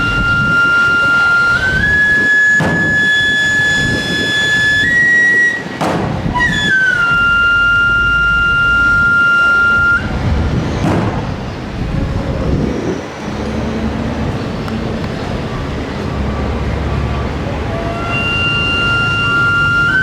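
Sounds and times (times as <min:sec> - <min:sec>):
shawm playing long high notes: 0:00.0 - 0:10.2, 0:17.4 - 0:20.0.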